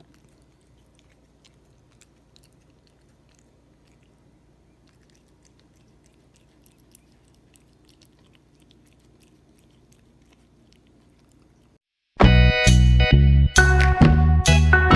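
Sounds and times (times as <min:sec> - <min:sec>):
cat chewing food: 0:00.0 - 0:11.8
loud guitar music: 0:12.2 - 0:14.9.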